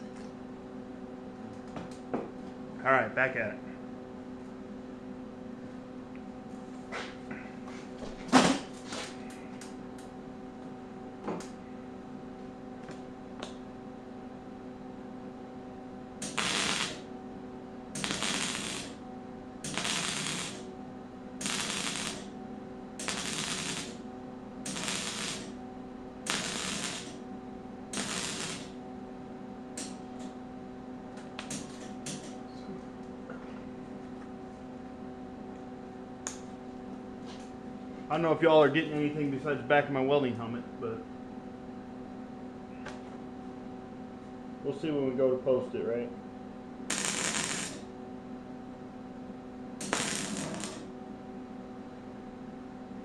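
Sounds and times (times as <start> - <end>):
steady hum: 0.0 - 53.0
welder arc crackling: 16.2 - 17.1, 18.0 - 19.0, 19.6 - 20.7, 21.4 - 22.4, 23.0 - 24.0, 24.6 - 25.6, 26.2 - 27.2, 27.9 - 28.8, 29.7 - 30.0, 31.4 - 32.4, 46.9 - 47.9, 49.8 - 50.9.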